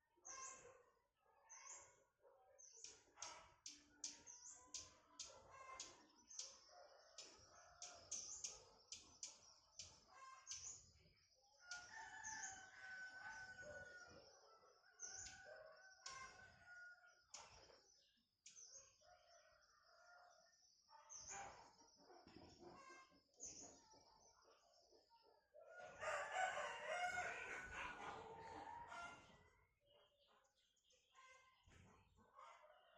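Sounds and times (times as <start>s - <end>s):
bird chirps and calls: 1.5s - 2.0s, 2.6s - 19.4s.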